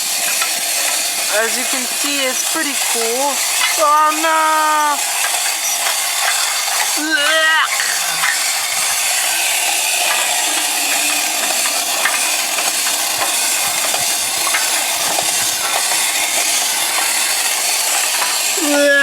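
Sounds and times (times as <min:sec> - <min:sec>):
clockwork toy whirring: 0:00.0 - 0:19.0
faint clockwork ticks: 0:00.0 - 0:19.0.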